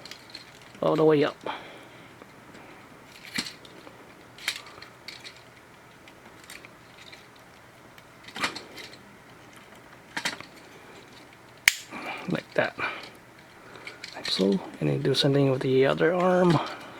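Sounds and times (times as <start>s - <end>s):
plastic toy parts clicking: 11.6s - 11.9s.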